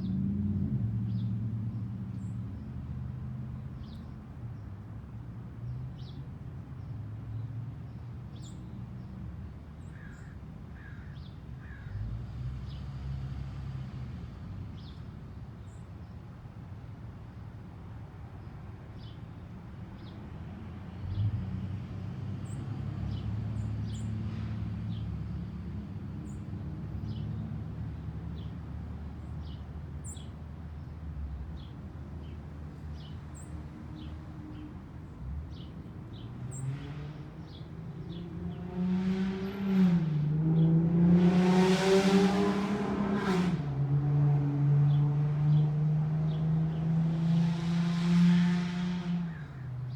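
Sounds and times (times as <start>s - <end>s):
vehicle engine hum: 20.4s - 49.9s
car approaching: 20.7s - 49.9s.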